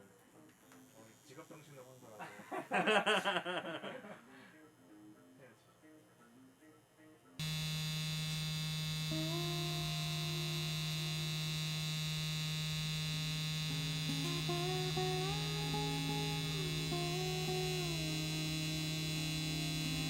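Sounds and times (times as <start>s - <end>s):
soft tones shifting in pitch: 7.4s - 20.0s
tattoo machine buzzing: 7.4s - 20.0s.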